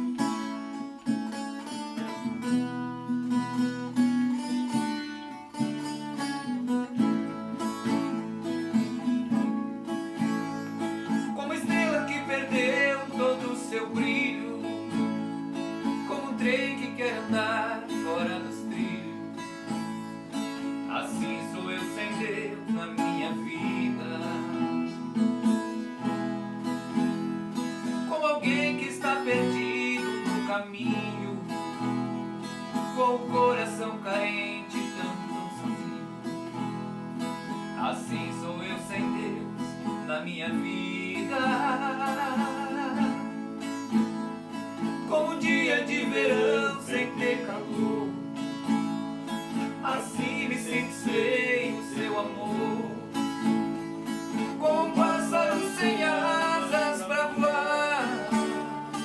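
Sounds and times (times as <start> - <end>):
viola and acoustic guitar playing: 0.0 - 59.0.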